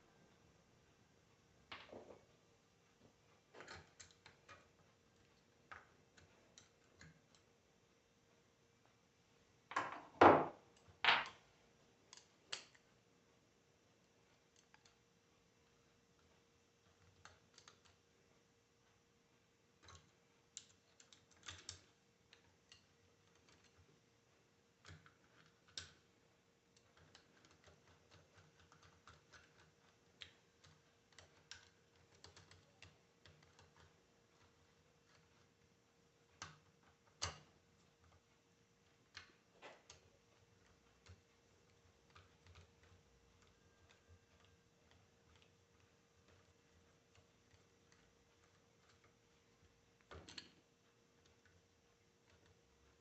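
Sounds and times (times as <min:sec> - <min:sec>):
faint steady hum: 0:00.0 - 0:53.0
small parts clicking and tapping: 0:01.6 - 0:09.0, 0:09.7 - 0:13.1, 0:13.9 - 0:53.0.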